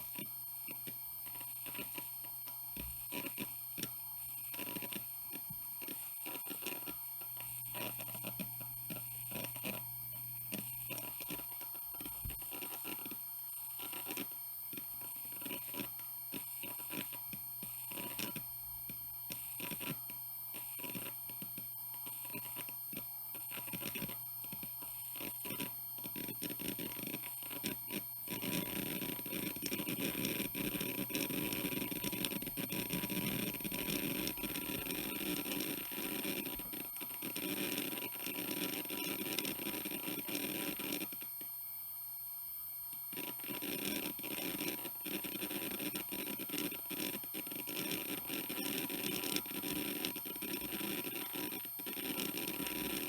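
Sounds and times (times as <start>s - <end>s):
hard drive spindle whine: 5.4s - 13.3s.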